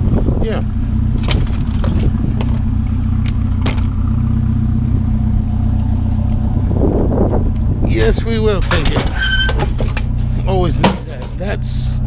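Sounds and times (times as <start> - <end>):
vehicle engine idling: 0.0 - 12.0
sharp knocks and clatters: 1.2 - 3.9, 8.0 - 11.6.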